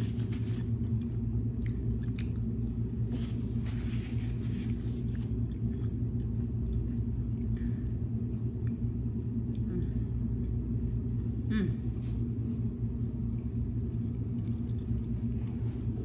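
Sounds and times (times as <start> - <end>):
person chewing food: 0.0 - 3.6
rustling: 3.1 - 5.3.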